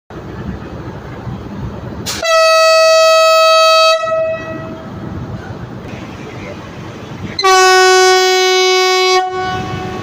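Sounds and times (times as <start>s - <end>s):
train horn blast: 2.1s - 4.9s, 7.4s - 10.0s.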